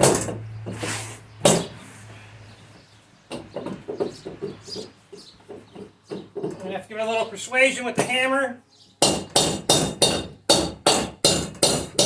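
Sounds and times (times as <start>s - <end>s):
scrape: 0.7s - 2.3s.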